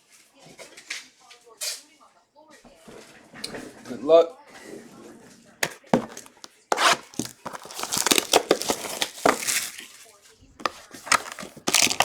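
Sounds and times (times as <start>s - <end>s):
card pack wrappers tearing: 5.6s - 12.0s.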